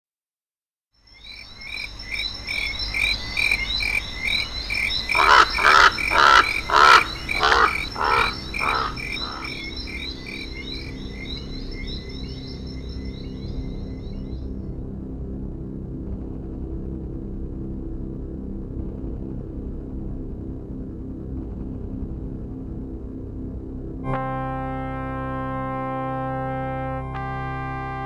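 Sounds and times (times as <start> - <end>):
louder animal calls: 1.8 - 11.3.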